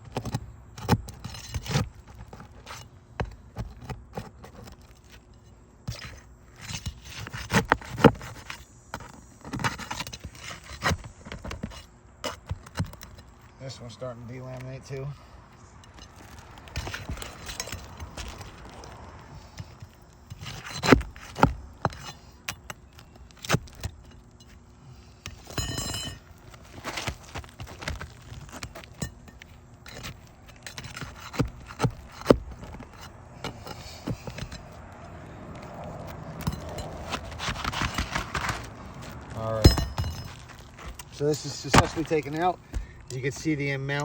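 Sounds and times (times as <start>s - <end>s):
shingle scraping: 0.0s - 44.0s
metal tool knocking and clicking: 25.2s - 26.2s
ringing metal clink: 25.4s - 26.3s, 39.5s - 40.4s.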